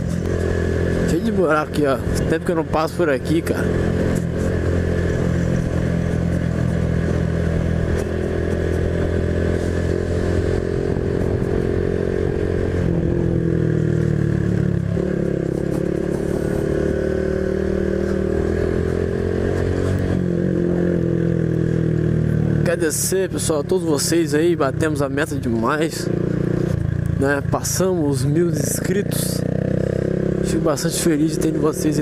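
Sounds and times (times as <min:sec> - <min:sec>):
motorcycle engine running: 0:00.0 - 0:32.0.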